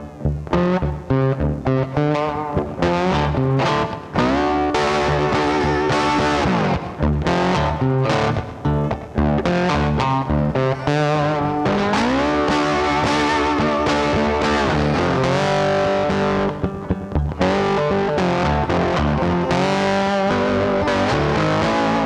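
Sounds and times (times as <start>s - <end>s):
bending guitar note: 0.0s - 22.0s
rock music: 0.6s - 22.0s.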